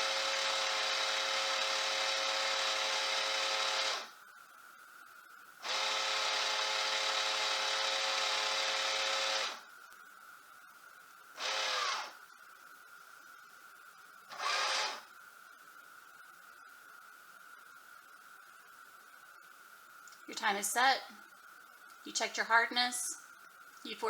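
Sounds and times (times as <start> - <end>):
small drive motor whirring: 0.0 - 4.1, 5.6 - 9.6, 11.4 - 12.2, 14.3 - 15.1.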